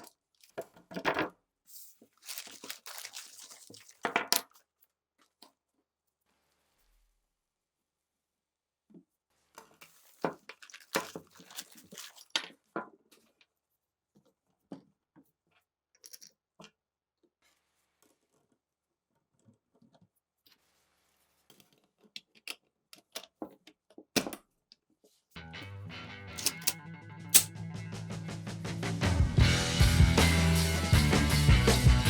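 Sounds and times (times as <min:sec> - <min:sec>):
metal gun parts clicking: 0:26.4 - 0:27.5.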